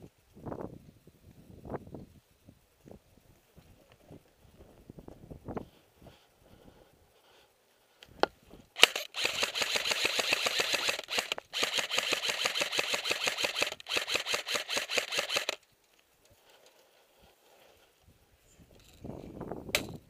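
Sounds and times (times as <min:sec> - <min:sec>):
airsoft rifle full-auto bursts: 0:08.8 - 0:15.6.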